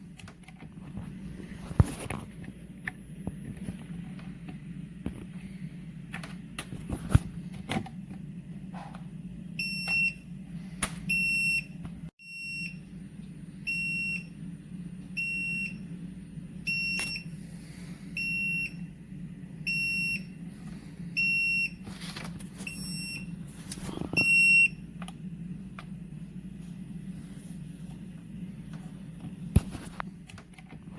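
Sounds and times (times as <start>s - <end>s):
steady low hum: 0.0s - 30.9s.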